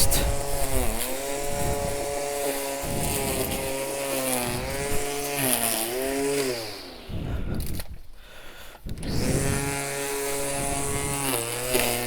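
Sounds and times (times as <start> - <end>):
string trimmer cutting grass: 0.0 - 12.0.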